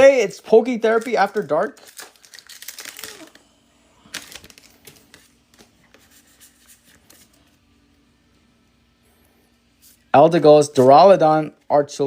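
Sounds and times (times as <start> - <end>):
foil wrapper crinkling and tearing: 0.0 - 7.4.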